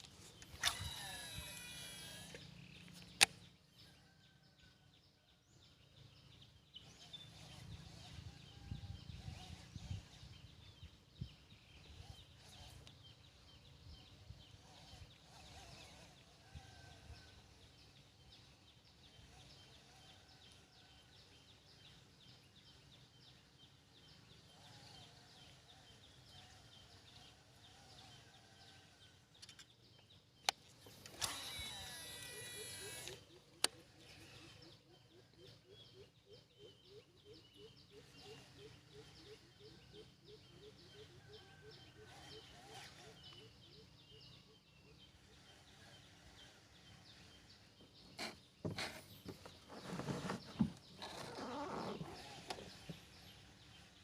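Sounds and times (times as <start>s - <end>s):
faint bird calls: 30.4s - 54.0s.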